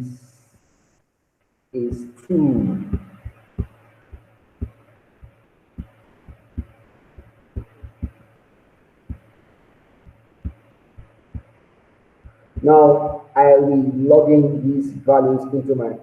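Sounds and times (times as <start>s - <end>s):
pen knocking on writing surface: 2.9s - 8.2s.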